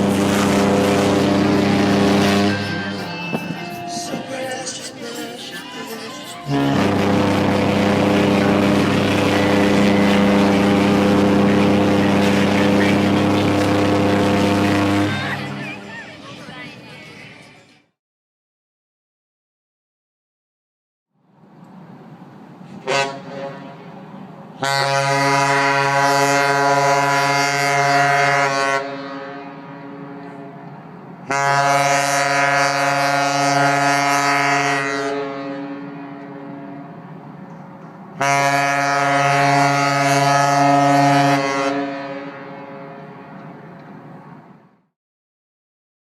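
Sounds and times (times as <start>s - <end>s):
ship's horn blasts: 0.0s - 15.9s, 22.8s - 24.0s, 24.6s - 37.2s, 38.1s - 43.8s.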